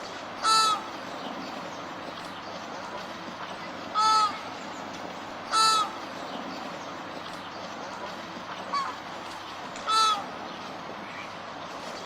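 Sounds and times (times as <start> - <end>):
steady background hiss: 0.0 - 12.0
flamingo honking: 0.4 - 0.9, 4.0 - 4.4, 5.5 - 6.0, 9.9 - 10.3.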